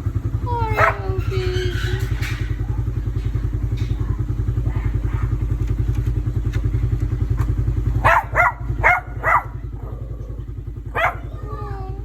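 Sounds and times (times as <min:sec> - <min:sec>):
small engine idling: 0:00.0 - 0:12.0
dog barking: 0:00.7 - 0:03.2, 0:03.8 - 0:05.5, 0:07.9 - 0:11.9.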